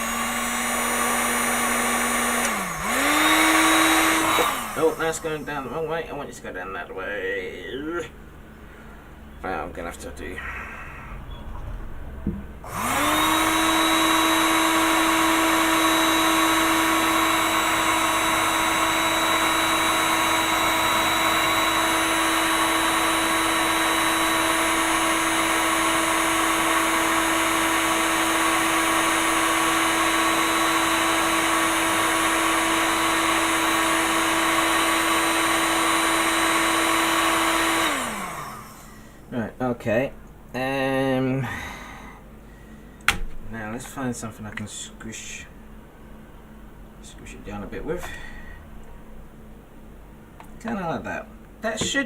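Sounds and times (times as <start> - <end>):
hot air gun fan whine: 0.0 - 11.3, 12.2 - 39.5.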